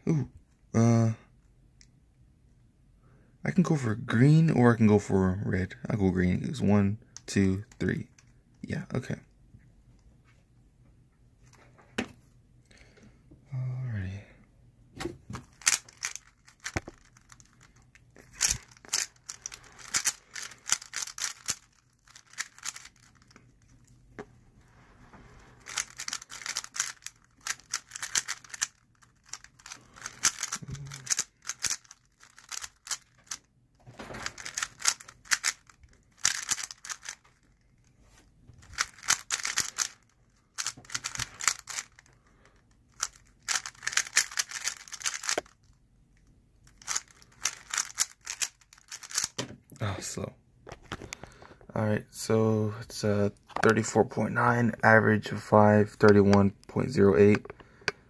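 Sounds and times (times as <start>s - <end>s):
rapid plastic clicking of cube: 15.4s - 23.7s, 25.6s - 37.9s, 38.6s - 45.7s, 46.6s - 49.4s.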